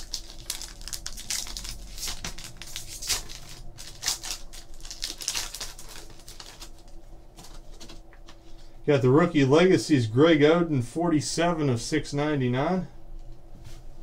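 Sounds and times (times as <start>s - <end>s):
cards and plastic wrapping crinkling: 0.0s - 8.4s.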